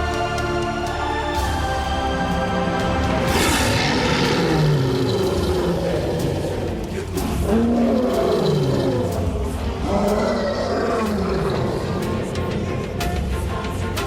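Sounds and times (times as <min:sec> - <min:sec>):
animal roars: 0:03.2 - 0:12.9.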